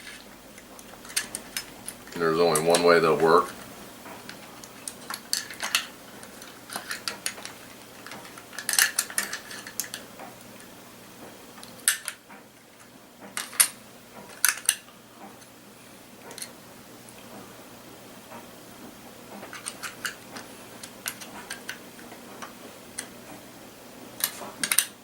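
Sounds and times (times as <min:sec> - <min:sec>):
metal gun parts clicking: 0:01.0 - 0:01.7, 0:04.8 - 0:10.0, 0:24.2 - 0:24.9.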